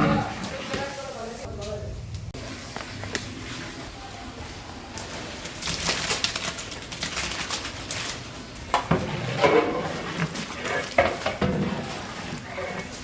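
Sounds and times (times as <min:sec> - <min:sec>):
metal utensils clattering: 0:05.0 - 0:13.0.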